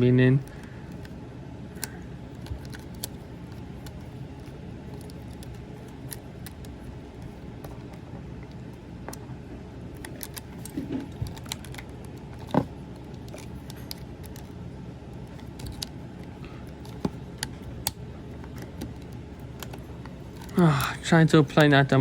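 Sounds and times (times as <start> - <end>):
low background hum: 0.0 - 22.0
plastic parts clicking and rattling: 1.8 - 7.9, 9.9 - 20.6.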